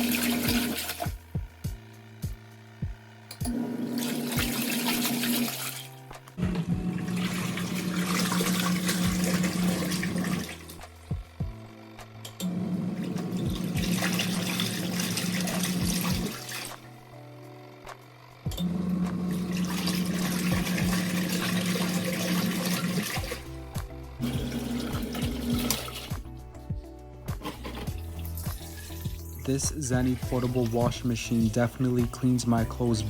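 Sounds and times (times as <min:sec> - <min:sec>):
washing machine motor humming: 0:00.0 - 0:33.0
water churning: 0:06.5 - 0:10.8.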